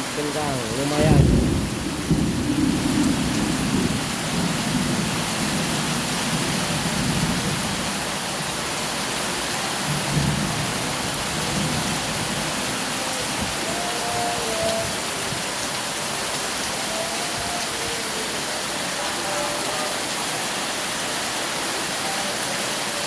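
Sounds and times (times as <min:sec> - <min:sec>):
wind gusting: 0:00.0 - 0:08.7
heavy rain pouring: 0:00.0 - 0:23.0.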